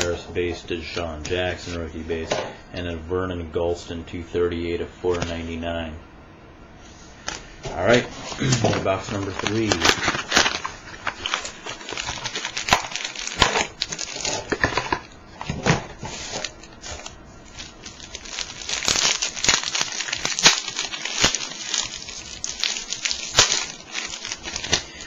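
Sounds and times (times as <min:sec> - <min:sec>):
wrappers crinkling and tearing: 0:07.9 - 0:25.0.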